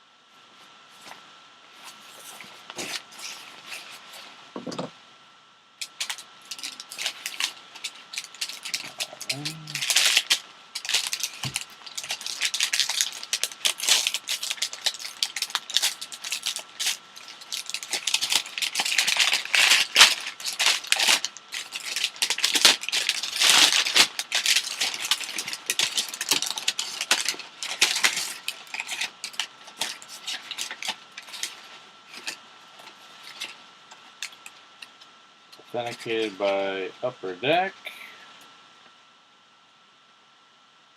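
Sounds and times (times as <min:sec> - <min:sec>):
packaging crinkling and rustling: 0:05.8 - 0:35.1.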